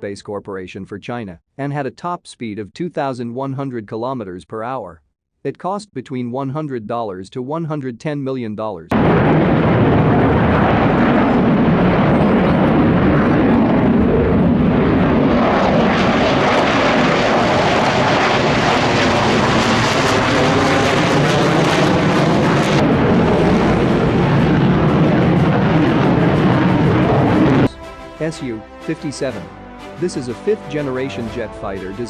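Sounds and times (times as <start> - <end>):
fighter jet engine roar: 8.9 - 29.6.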